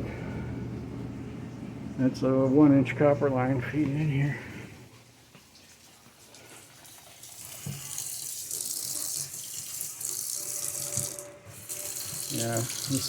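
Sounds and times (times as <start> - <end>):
faucet water running into sink: 5.0 - 13.0.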